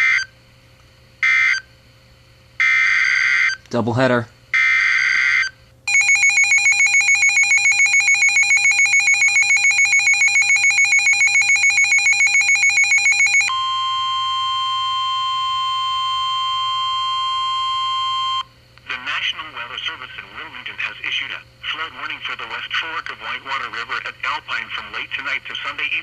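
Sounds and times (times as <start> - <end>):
fast-pulsing alert beeps: 5.9 - 13.5
steady alert tone: 5.9 - 13.8.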